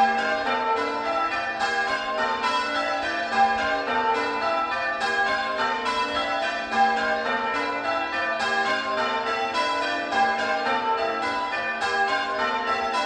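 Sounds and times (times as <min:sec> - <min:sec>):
church bells ringing changes: 0:00.0 - 0:13.0.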